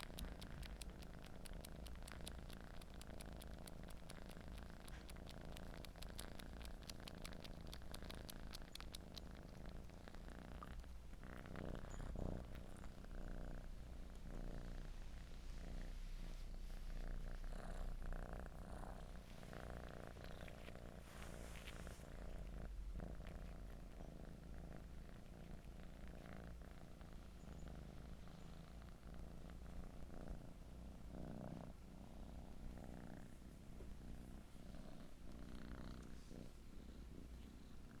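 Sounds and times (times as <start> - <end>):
wet suckling clicks: 0.0 - 11.0
cat purring: 0.0 - 38.0.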